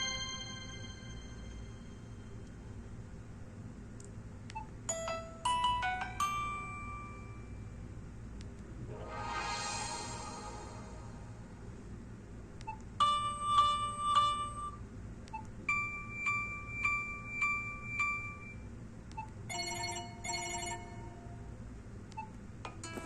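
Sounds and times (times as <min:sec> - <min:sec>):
phone ringtones: 0:19.5 - 0:21.2.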